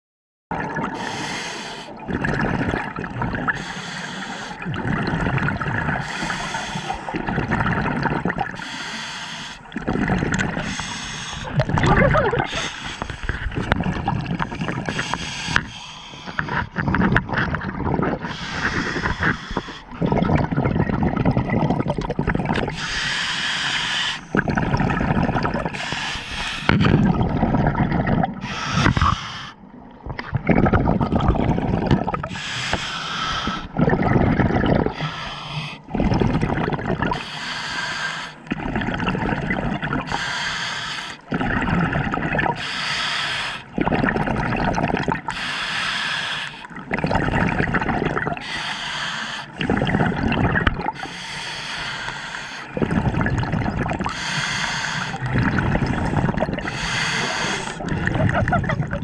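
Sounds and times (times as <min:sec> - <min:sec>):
gurgling exhaled bubbles: 0:00.5 - 0:59.0
regulator hissing inhalations: 0:01.0 - 0:02.0, 0:03.6 - 0:04.6, 0:06.0 - 0:07.1, 0:08.6 - 0:09.7, 0:10.6 - 0:11.5, 0:14.9 - 0:16.6, 0:18.3 - 0:19.9, 0:22.8 - 0:24.3, 0:25.7 - 0:26.7, 0:28.4 - 0:29.6, 0:32.3 - 0:33.7, 0:34.9 - 0:35.9, 0:37.2 - 0:38.4, 0:40.1 - 0:41.2, 0:42.6 - 0:43.7, 0:45.3 - 0:46.7, 0:48.4 - 0:49.6, 0:51.0 - 0:52.8, 0:54.1 - 0:55.2, 0:56.6 - 0:57.8.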